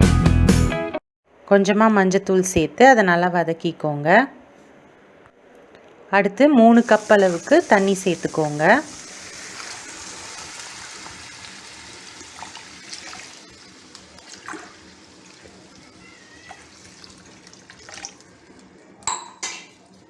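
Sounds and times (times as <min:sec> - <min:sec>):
water pouring into saucepan: 0:06.8 - 0:18.7.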